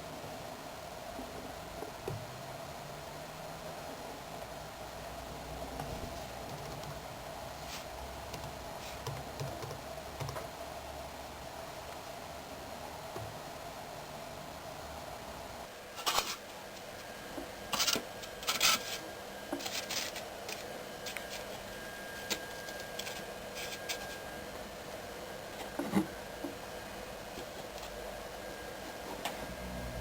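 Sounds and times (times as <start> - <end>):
machine hum: 16.8 - 30.0
foam scratching and rubbing: 17.8 - 21.6.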